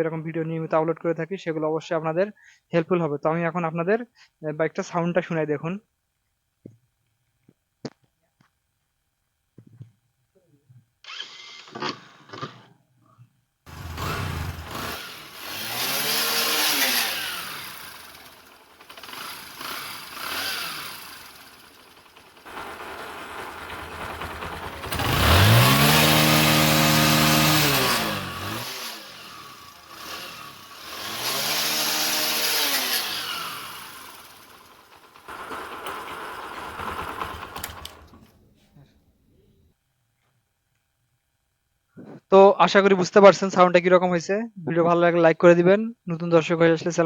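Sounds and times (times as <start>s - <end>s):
motorcycle engine revving: 13.7s - 38.4s.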